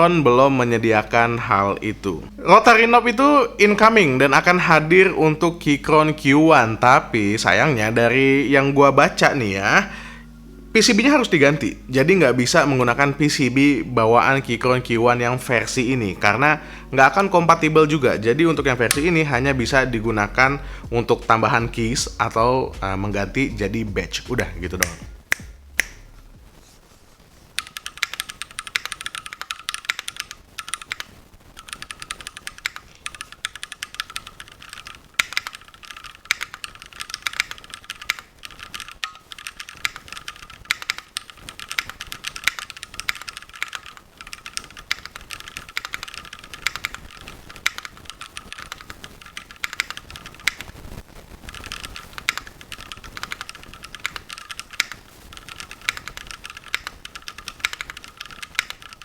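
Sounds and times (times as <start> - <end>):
mechanical keyboard typing: 17.1 - 20.5, 24.7 - 26.0, 27.6 - 59.0.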